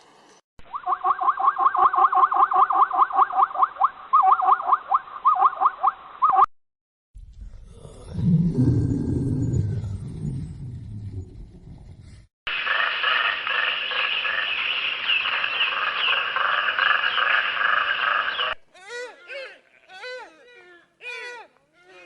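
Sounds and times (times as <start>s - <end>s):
large animal roaring: 7.2s - 12.1s
high chirping calls: 12.7s - 18.6s.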